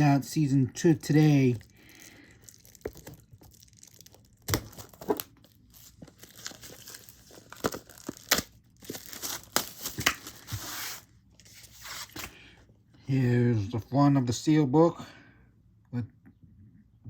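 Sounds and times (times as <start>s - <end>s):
plastic packaging tearing and crinkling: 1.1s - 12.4s
plastic rustle: 1.4s - 12.2s.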